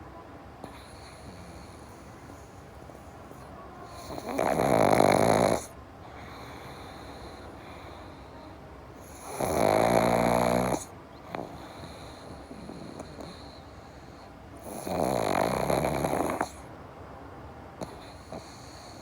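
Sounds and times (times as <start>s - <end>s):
dog snoring: 0.6s - 8.3s, 9.0s - 16.7s, 17.8s - 19.0s
dog breathing: 0.6s - 16.7s, 17.8s - 19.0s.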